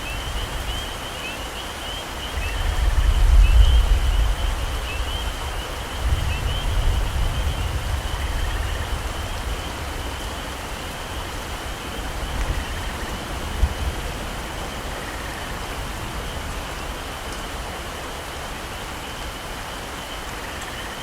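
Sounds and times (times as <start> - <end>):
heavy rain falling: 0.0 - 21.0.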